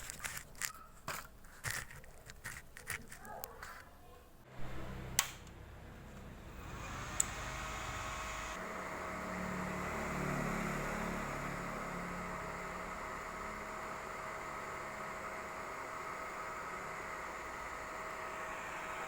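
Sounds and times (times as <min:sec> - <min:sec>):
welding machine fan whirring: 0:00.0 - 0:03.9, 0:05.0 - 0:19.0.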